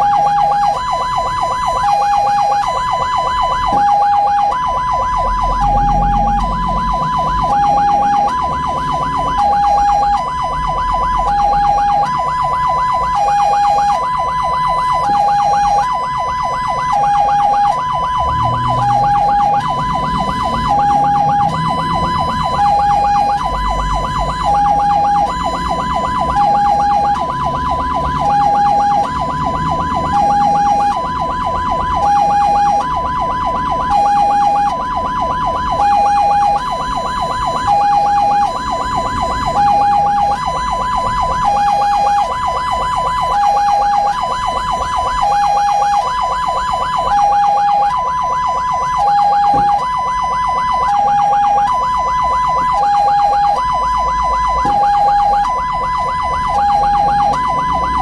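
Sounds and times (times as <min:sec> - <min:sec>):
two-tone siren: 0:00.0 - 0:58.0
low vehicle rumble: 0:03.2 - 0:13.1.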